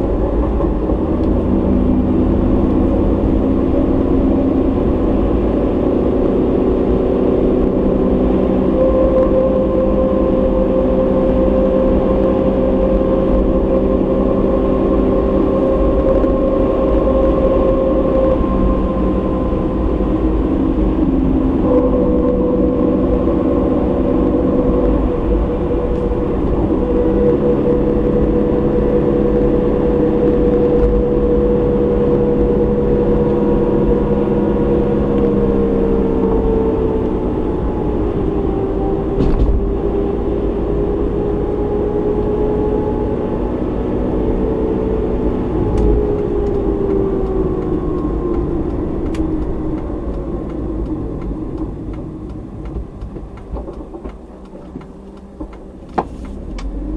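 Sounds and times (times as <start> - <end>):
car engine hum: 0.0 - 56.9
thumps from the road: 39.2 - 39.7, 55.4 - 56.4.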